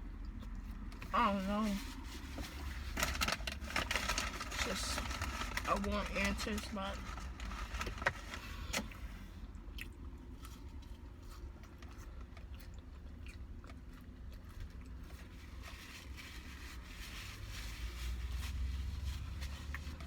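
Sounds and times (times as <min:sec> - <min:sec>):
low steady hum: 0:00.0 - 0:20.0
person chewing and biting food: 0:08.6 - 0:15.6.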